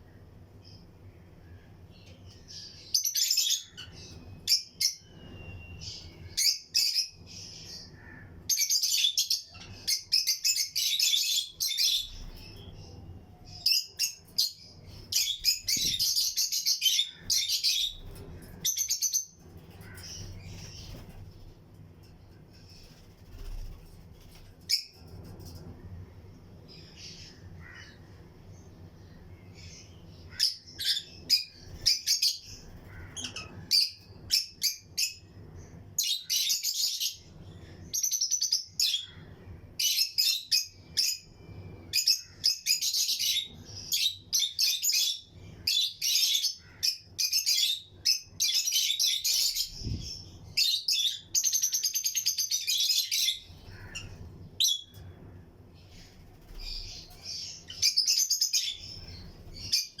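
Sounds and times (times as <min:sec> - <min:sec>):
lovebirds chirping: 0:00.5 - 1:00.0.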